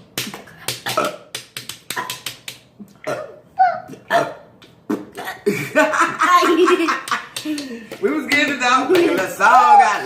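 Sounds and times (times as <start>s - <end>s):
sharp clicks and smacks: 0.0s - 2.9s, 7.0s - 9.3s.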